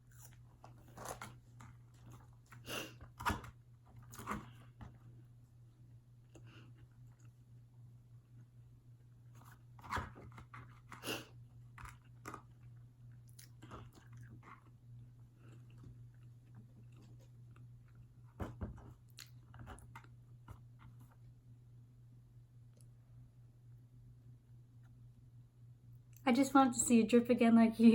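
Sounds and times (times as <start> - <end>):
crunchy chewing of fried chicken: 0.0 - 5.3, 9.2 - 21.2
steady low hum: 0.0 - 27.9.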